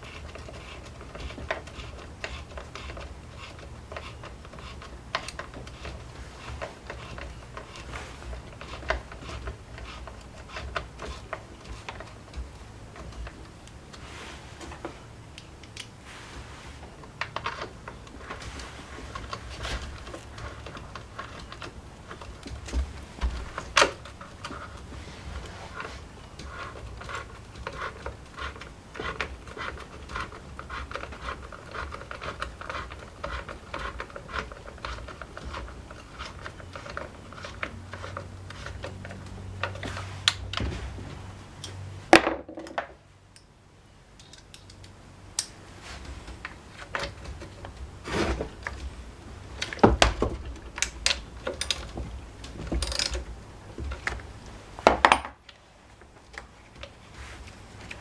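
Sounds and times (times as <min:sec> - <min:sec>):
metal tools clinking and knocking: 0:50.4 - 0:54.1.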